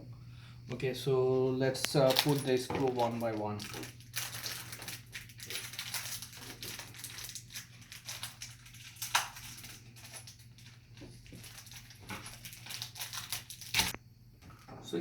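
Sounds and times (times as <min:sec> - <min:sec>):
low steady hum: 0:00.0 - 0:15.0
rustling and scraping of hardware: 0:01.8 - 0:07.2.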